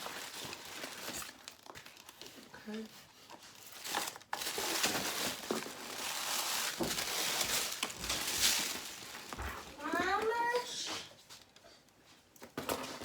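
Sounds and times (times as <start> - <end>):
packaging crinkling: 0.0 - 10.3.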